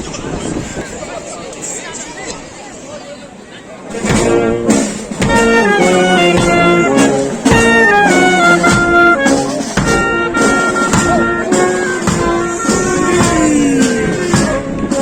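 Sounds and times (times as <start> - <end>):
brass band playing: 3.9 - 15.0
drum hits: 3.9 - 15.0.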